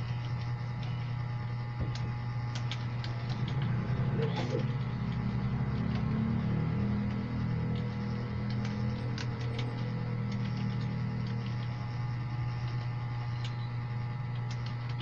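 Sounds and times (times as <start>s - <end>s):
low electrical hum: 0.0s - 15.0s
keyboard keys clicking: 1.9s - 11.9s, 14.3s - 15.0s.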